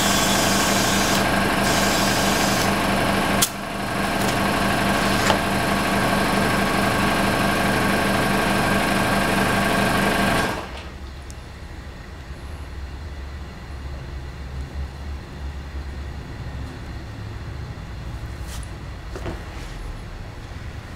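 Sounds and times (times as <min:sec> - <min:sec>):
machine motor pulsing: 0:00.0 - 0:11.0.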